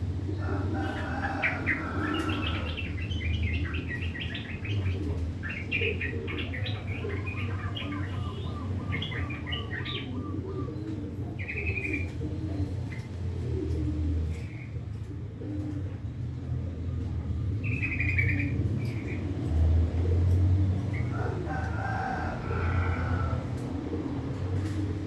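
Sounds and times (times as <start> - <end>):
bird chattering song: 0.6 - 13.4, 17.5 - 19.3.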